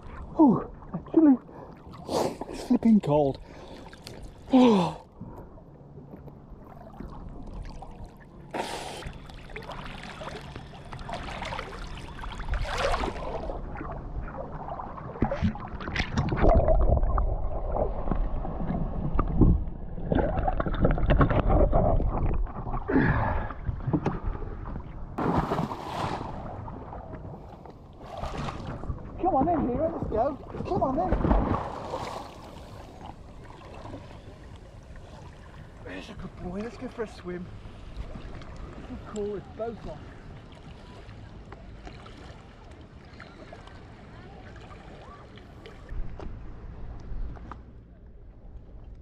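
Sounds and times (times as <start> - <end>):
water splashing from swimming: 6.8 - 24.6, 25.2 - 29.8.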